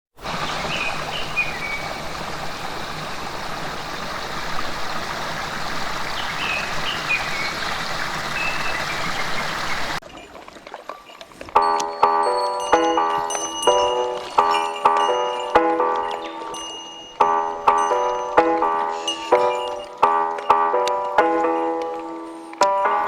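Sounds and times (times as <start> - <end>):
stream water rushing: 0.2 - 23.0
short high chirps: 11.7 - 21.2.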